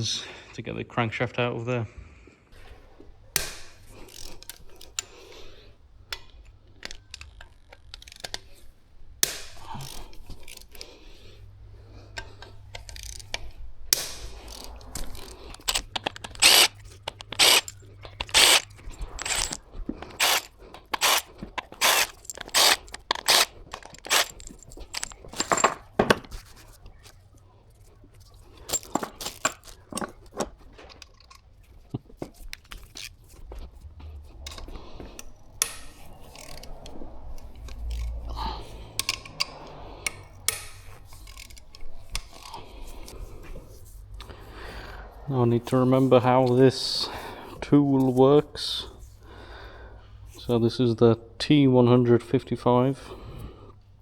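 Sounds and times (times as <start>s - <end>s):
metal scraping: 8.0s - 26.8s
metallic clicks and knocks: 12.2s - 26.4s.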